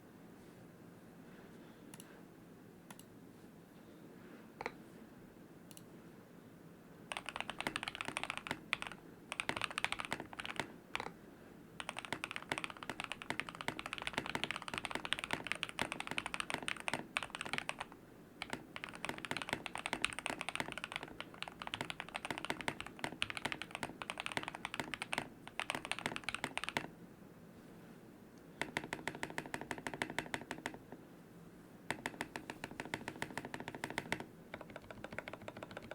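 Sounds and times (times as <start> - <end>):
mechanical keyboard typing: 7.1 - 11.2, 11.8 - 26.9, 28.6 - 30.8, 31.9 - 35.9.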